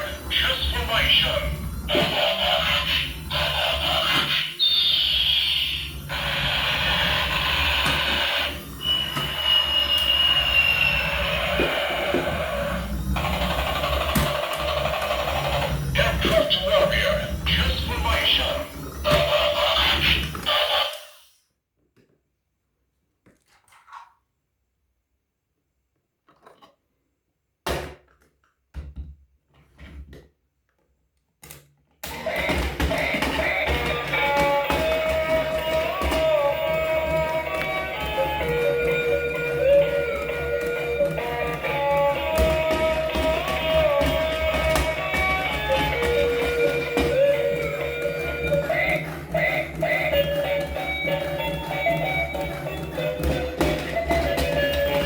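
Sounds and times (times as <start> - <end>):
toy electronic rumble: 0.0 - 21.3, 32.0 - 55.0
music: 6.1 - 20.9, 32.1 - 55.0.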